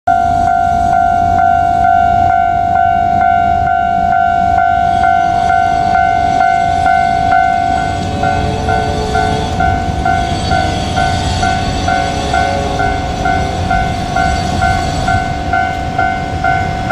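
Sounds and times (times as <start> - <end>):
level crossing warning bell: 0.1 - 16.9
lower tone: 0.1 - 16.9.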